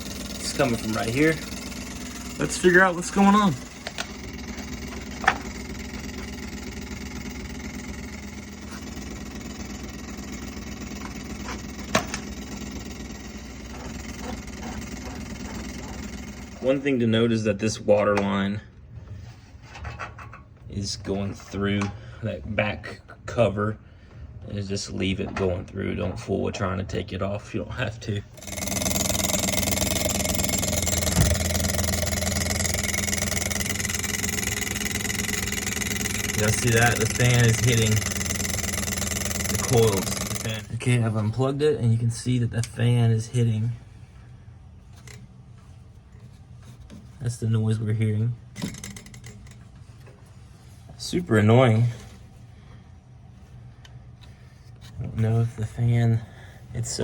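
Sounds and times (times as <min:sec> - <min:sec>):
fan blades ticking and rattling: 0:00.0 - 0:18.5, 0:28.2 - 0:43.7, 0:44.8 - 0:52.7
steady motor hum: 0:00.0 - 0:19.8, 0:28.2 - 0:57.0.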